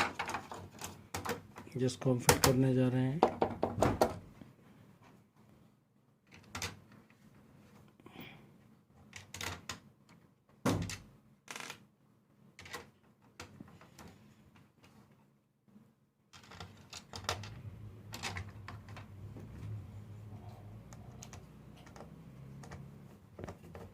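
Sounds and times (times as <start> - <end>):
plastic keyboard keys clicking: 20.8 - 22.8.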